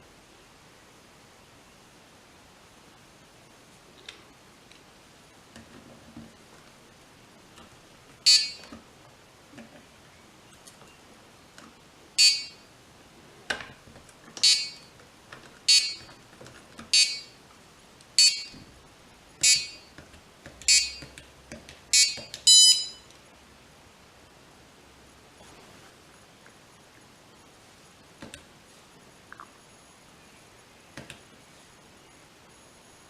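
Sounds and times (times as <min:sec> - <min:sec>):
electronic buzzer beeps: 0:08.2 - 0:08.7, 0:12.2 - 0:12.7, 0:14.4 - 0:14.9, 0:15.7 - 0:16.1, 0:16.9 - 0:17.4, 0:18.2 - 0:18.6, 0:19.4 - 0:20.0, 0:20.6 - 0:21.1, 0:21.9 - 0:23.1
pitched electronic tone: 0:08.2 - 0:08.7, 0:12.2 - 0:12.7, 0:14.4 - 0:14.9, 0:15.7 - 0:16.1, 0:16.9 - 0:17.4, 0:19.4 - 0:19.9, 0:20.7 - 0:21.1, 0:21.9 - 0:23.1.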